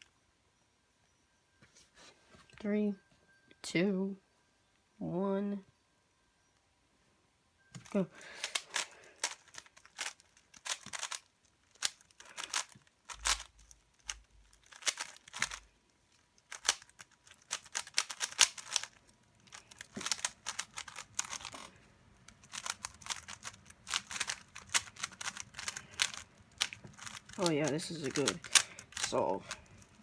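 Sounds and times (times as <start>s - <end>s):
puzzle cube clicking: 7.8s - 15.7s, 16.4s - 30.0s.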